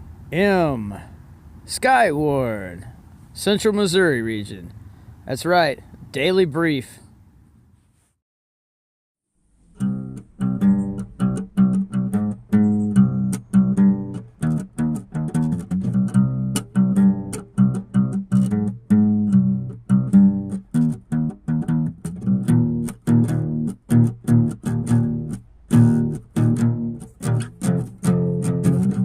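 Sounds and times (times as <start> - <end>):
plucked guitar music: 9.6 - 29.0
bass line: 9.7 - 29.0.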